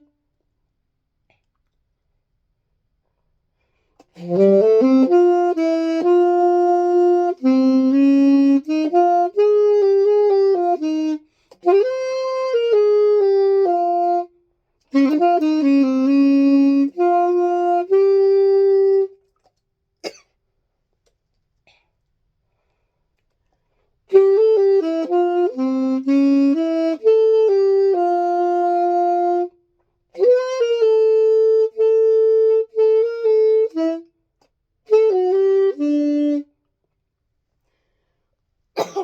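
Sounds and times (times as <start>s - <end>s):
solo saxophone melody: 0.0s - 0.2s, 3.6s - 19.4s, 23.7s - 36.6s.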